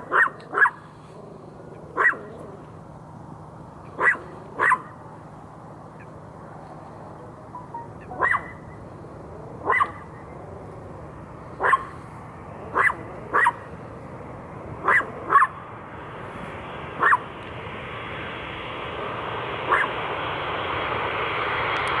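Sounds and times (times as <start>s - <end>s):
dog barking: 0.0s - 0.9s, 1.9s - 2.6s, 4.0s - 5.0s, 8.1s - 8.7s, 9.6s - 10.2s, 11.6s - 13.8s, 14.8s - 15.6s, 17.0s - 17.3s, 19.7s - 20.0s
jet airliner engine noise: 0.0s - 22.0s.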